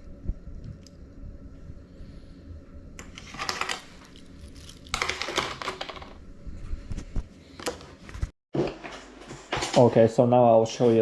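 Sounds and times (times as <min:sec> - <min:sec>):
small objects clicking and rustling: 0:03.2 - 0:06.2.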